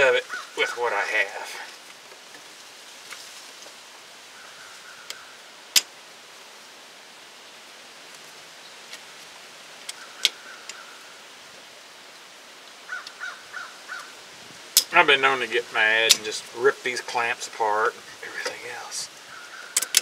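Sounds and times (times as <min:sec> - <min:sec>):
wind hiss: 0:00.0 - 0:20.0
metallic clicks and snaps: 0:19.7 - 0:20.0.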